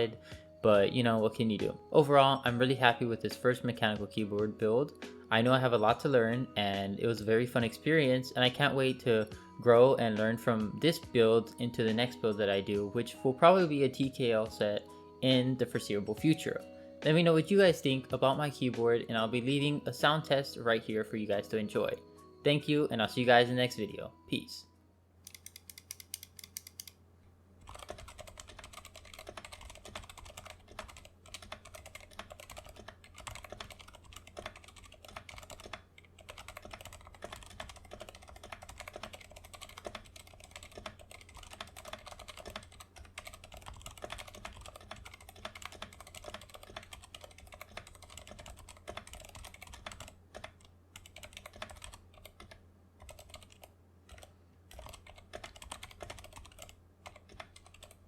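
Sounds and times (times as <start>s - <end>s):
quiet mechanical keyboard typing: 25.3s - 27.0s, 27.6s - 58.0s.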